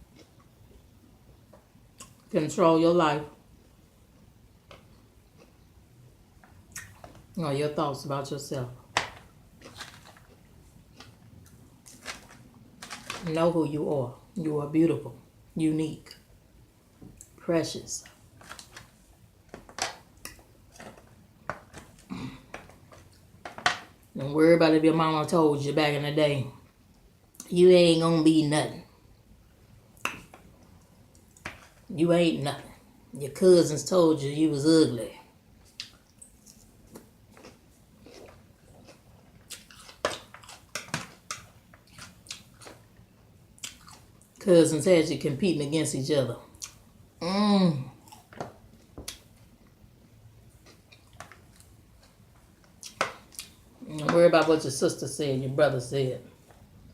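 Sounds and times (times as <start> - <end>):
chewing and lip-smacking: 35.6 - 43.0, 43.6 - 44.4, 50.5 - 53.6.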